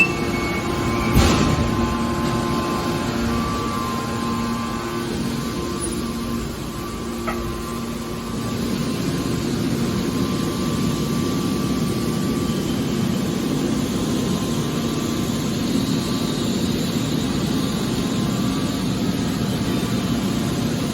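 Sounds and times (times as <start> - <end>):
heavy mechanical drone of baler: 0.0 - 20.9.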